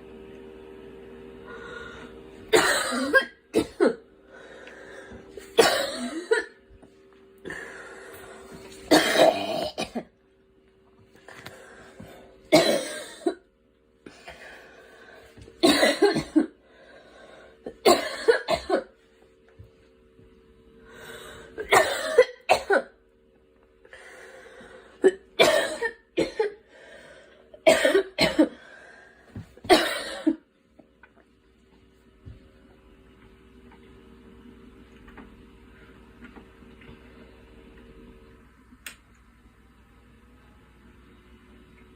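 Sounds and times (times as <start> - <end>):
girl coughing: 2.5 - 4.0, 5.5 - 6.6, 8.9 - 10.1, 12.5 - 13.4, 15.6 - 16.6, 17.7 - 18.9, 21.6 - 23.0, 25.0 - 26.6, 27.6 - 28.6, 29.6 - 30.4.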